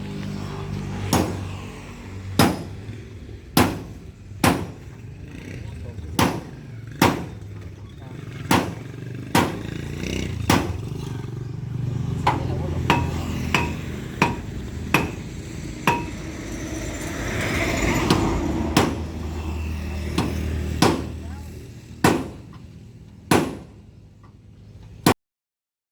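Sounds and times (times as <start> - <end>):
engine running hum: 0.0 - 25.1
sharp metallic clanks: 12.2 - 19.2.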